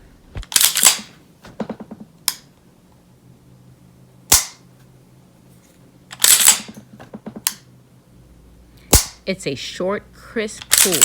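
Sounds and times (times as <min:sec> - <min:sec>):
pistol shots: 0:04.3 - 0:04.6, 0:08.9 - 0:09.2.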